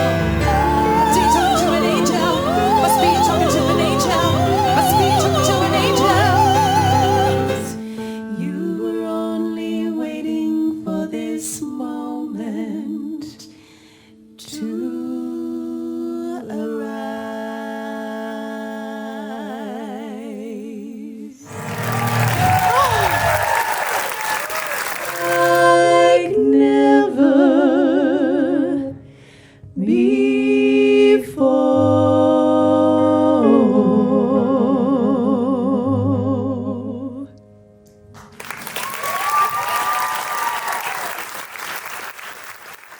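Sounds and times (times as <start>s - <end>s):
women singing in harmony: 0.0s - 13.5s, 14.4s - 21.5s, 25.1s - 29.0s, 29.8s - 37.3s.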